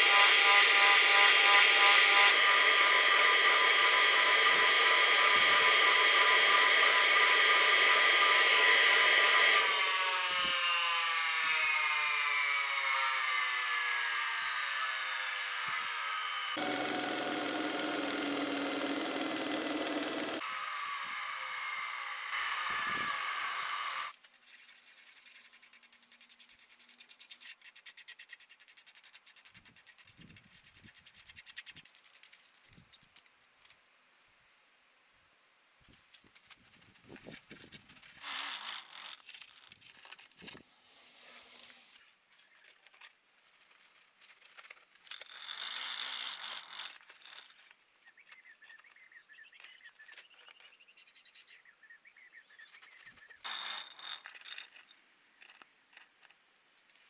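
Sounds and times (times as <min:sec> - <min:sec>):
scraping and rubbing: 0:24.2 - 0:33.7
fast rubbing strokes: 0:24.4 - 0:32.7.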